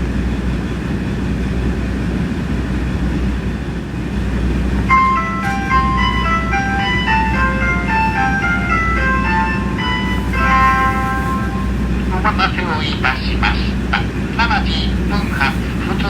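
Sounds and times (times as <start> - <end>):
diesel railcar idling: 0.0 - 16.0
announcement chime melody: 4.8 - 13.5.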